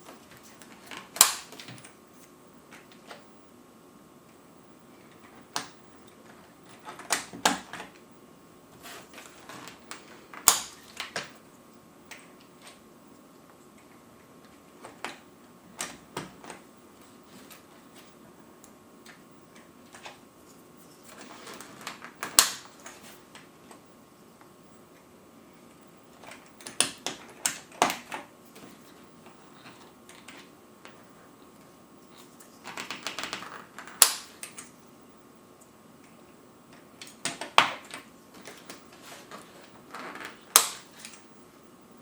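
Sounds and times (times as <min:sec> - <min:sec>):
keycaps clicking and snapping: 0:09.4 - 0:11.4.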